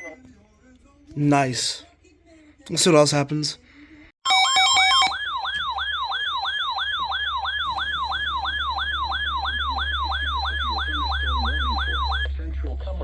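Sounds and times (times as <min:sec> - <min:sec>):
electronic yelping alert tone: 0:04.3 - 0:12.3.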